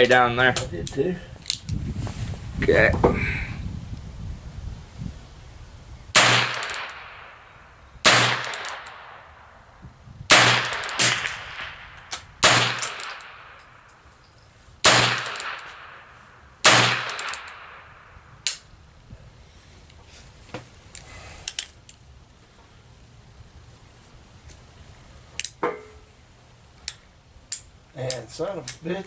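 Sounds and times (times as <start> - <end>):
revolver gunshots echoing: 6.1 - 14.0, 14.8 - 18.4
light crack: 6.2 - 9.6, 10.3 - 18.7, 26.8 - 28.9.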